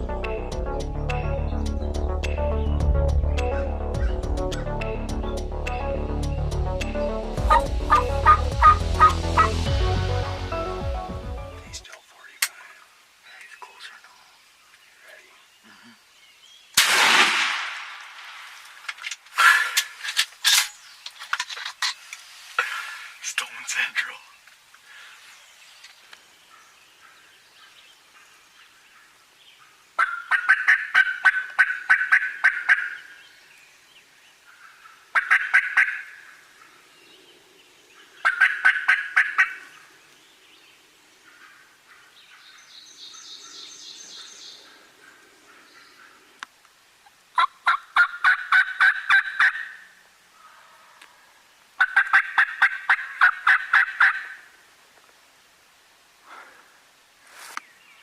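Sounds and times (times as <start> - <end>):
wild turkey calling: 7.4 - 9.7, 29.0 - 33.3, 34.4 - 40.2, 47.0 - 54.6.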